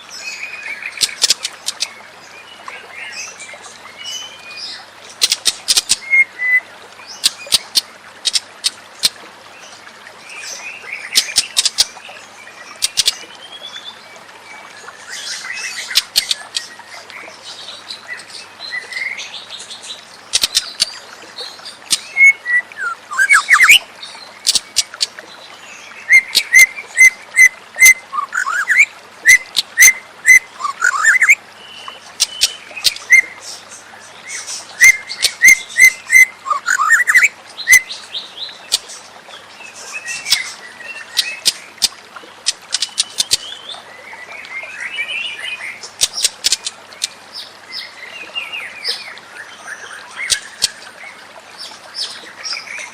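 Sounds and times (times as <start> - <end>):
songbird singing whistled phrases: 22.1 - 23.8, 26.1 - 31.4, 34.8 - 37.9.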